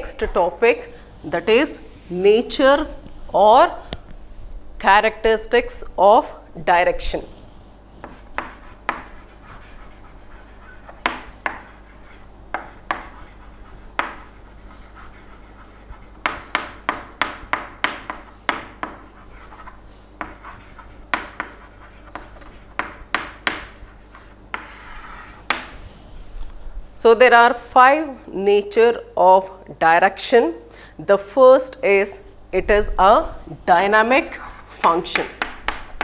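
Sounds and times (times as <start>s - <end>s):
pen tapping and scratching: 8.0s - 25.7s, 35.0s - 36.0s.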